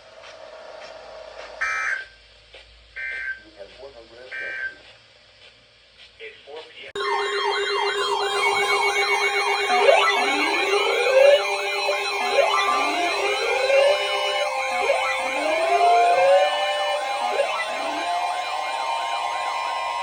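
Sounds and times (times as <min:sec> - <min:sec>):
fast yelping siren: 0:07.0 - 0:20.0
rising whooping siren: 0:07.0 - 0:20.0.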